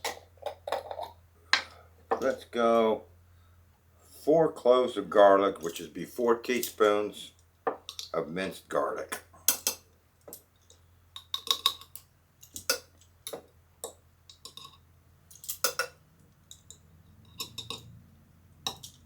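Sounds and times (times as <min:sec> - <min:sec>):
teaspoon clinking and tapping: 0:11.2 - 0:17.9, 0:18.7 - 0:19.0.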